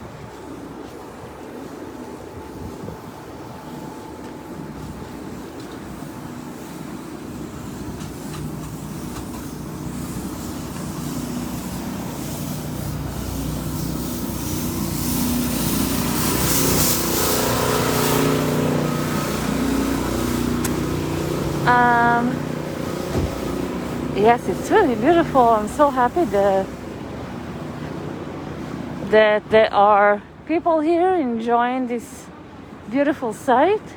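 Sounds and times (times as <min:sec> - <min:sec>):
vehicle engine hum: 0:00.0 - 0:31.2
tyre hiss: 0:04.8 - 0:26.8.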